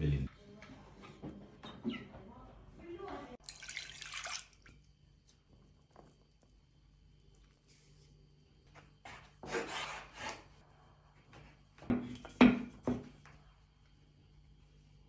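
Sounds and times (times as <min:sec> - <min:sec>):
rasping scrape: 0:09.1 - 0:10.5.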